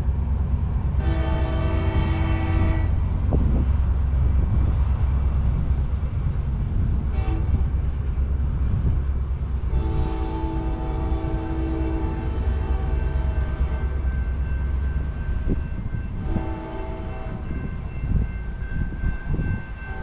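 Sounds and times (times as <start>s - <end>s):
diesel locomotive rumbling: 0.0s - 20.0s
train horn: 1.0s - 3.4s, 7.0s - 7.8s, 9.6s - 14.6s, 15.5s - 17.9s, 19.4s - 20.0s.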